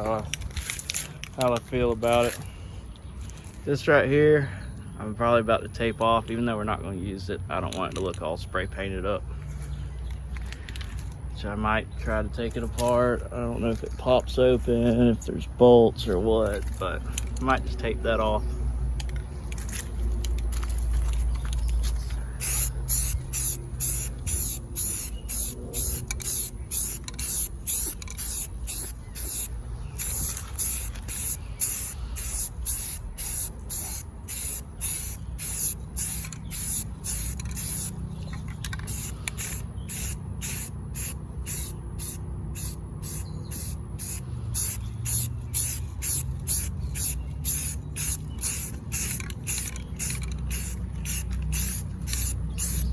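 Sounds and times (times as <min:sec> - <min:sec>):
spray paint can hissing: 0:22.4 - 0:38.0, 0:38.6 - 0:52.9.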